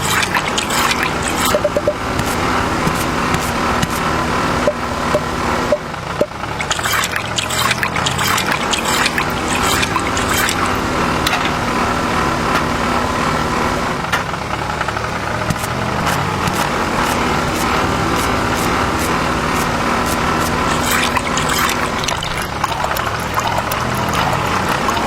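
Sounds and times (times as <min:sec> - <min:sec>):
small motor running: 0:00.0 - 0:04.9, 0:15.2 - 0:25.0
wet crackling and trickling: 0:06.5 - 0:10.8, 0:20.1 - 0:25.0.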